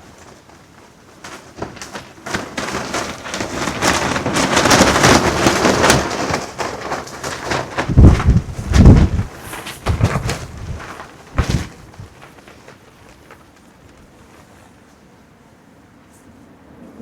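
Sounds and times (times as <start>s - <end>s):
clothing flapping: 0.0s - 15.3s
wind buffeting microphone: 3.4s - 14.2s.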